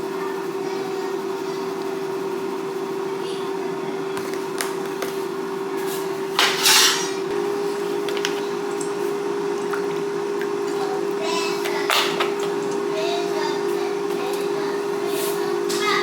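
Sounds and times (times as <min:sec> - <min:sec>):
steady appliance hum: 0:00.0 - 0:16.0
utensil scraping pan: 0:06.4 - 0:07.2.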